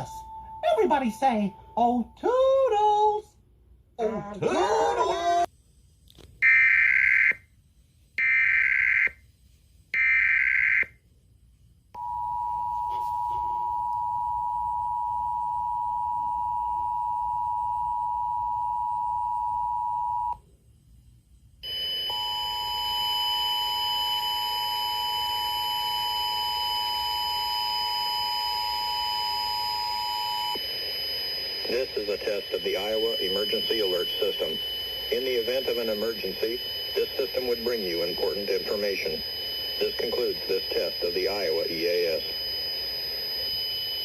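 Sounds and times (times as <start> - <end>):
high-pitched whine: 21.6 - 44.0
screeching digital data bursts: 31.6 - 43.0.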